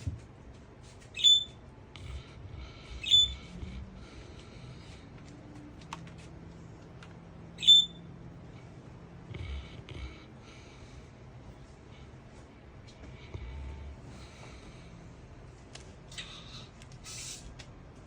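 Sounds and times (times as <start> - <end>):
dog squeaking: 1.1 - 1.6, 3.0 - 3.5, 7.6 - 8.0
dog snoring softly: 9.2 - 10.4, 13.1 - 14.7.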